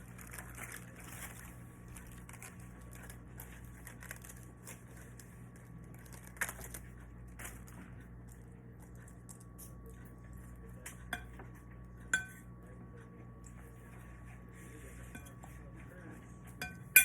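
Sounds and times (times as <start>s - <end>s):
low room hum: 0.0s - 17.0s
utensils clinking against dishes: 10.8s - 12.5s, 15.0s - 17.0s.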